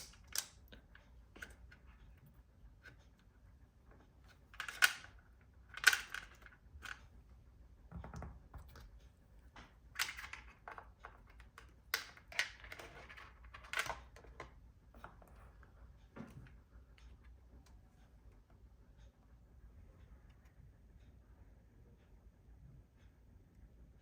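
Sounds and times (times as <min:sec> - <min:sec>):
laptop parts clicking and scraping: 0:04.2 - 0:07.1, 0:10.0 - 0:15.4.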